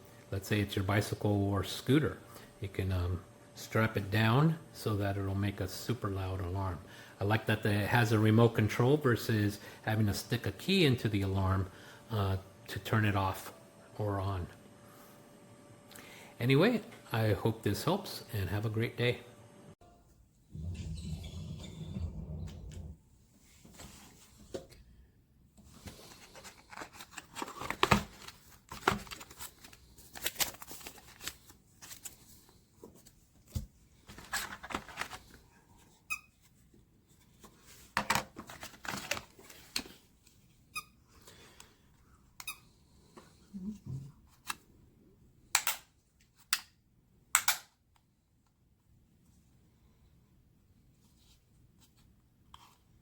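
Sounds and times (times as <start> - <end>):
clicks and squeaks: 20.6 - 23.0
rustling and tearing: 25.9 - 32.3.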